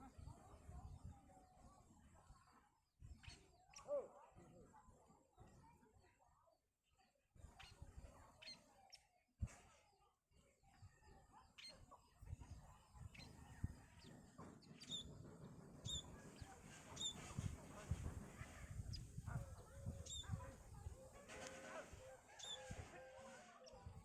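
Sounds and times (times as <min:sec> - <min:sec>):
small birds chirping: 0:07.4 - 0:09.0, 0:11.4 - 0:24.0.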